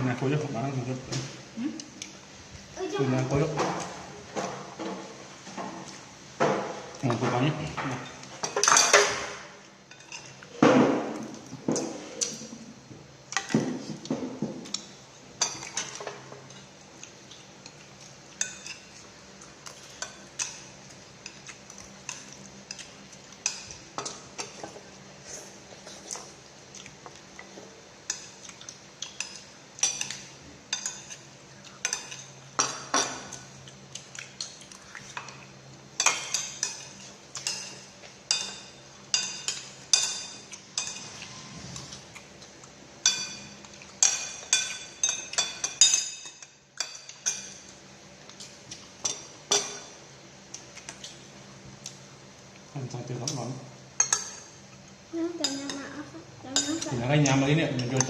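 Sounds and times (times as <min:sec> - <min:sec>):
utensils clinking against dishes: 0:03.5 - 0:12.5, 0:17.6 - 0:26.3, 0:28.1 - 0:33.4, 0:34.4 - 0:42.1, 0:43.0 - 0:50.0, 0:53.2 - 0:54.6, 0:56.5 - 0:58.0.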